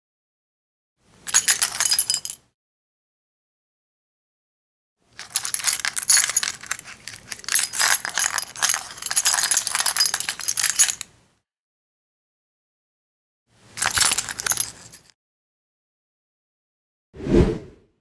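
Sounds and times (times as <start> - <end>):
metal keys jangling: 1.3 - 2.4, 5.2 - 11.0, 13.8 - 15.1.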